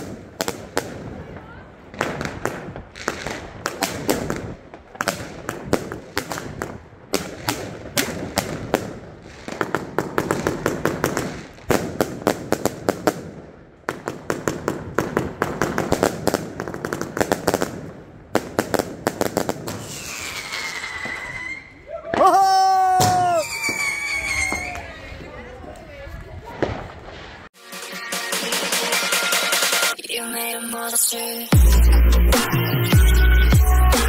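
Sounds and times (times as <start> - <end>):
firework bursting cracks: 0.0 - 22.4, 23.0 - 25.0, 26.5 - 27.6.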